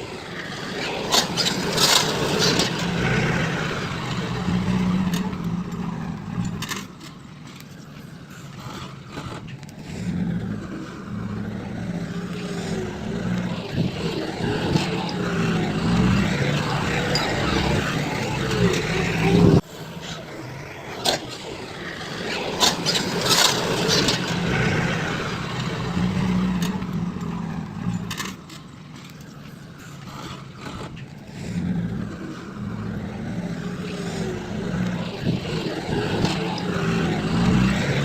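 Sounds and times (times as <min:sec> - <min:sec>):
heavy machinery engines running: 0:00.0 - 0:38.0
clanks and knocks: 0:00.9 - 0:11.0.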